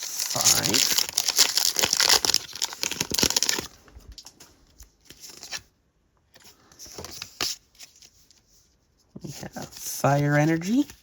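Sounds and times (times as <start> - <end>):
foil wrapper crinkling and tearing: 0.0 - 4.3.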